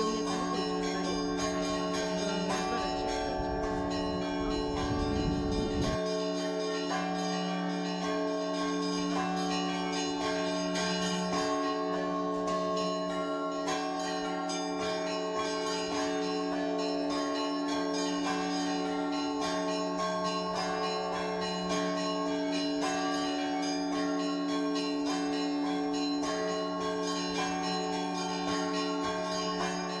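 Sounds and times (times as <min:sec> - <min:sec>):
deep large bell tone: 0:00.0 - 0:06.2
small church bells ringing: 0:00.0 - 0:30.0.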